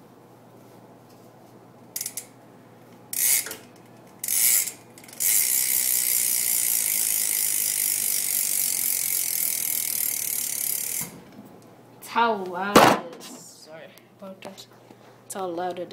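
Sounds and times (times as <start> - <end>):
bike hub ratcheting clicks: 2.0 - 2.4, 3.1 - 11.1.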